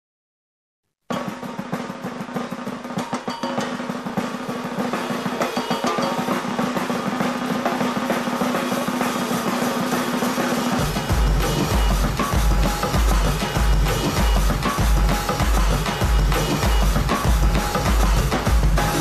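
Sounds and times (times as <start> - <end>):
percussion band playing: 1.1 - 19.0
snare drum rolls: 1.1 - 19.0
deep bass drums: 10.8 - 19.0.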